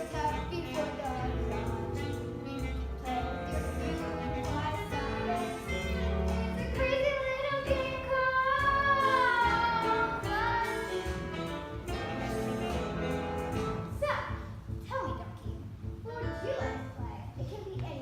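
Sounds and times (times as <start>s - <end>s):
musical accompaniment: 0.0s - 18.0s
young voices singing: 3.6s - 11.2s.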